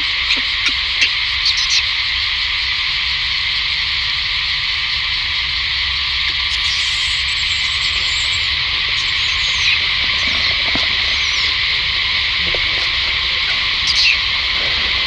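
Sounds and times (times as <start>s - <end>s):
chorus of calling animals: 0.0s - 2.2s, 6.2s - 15.0s
faint high chirps: 6.3s - 11.9s.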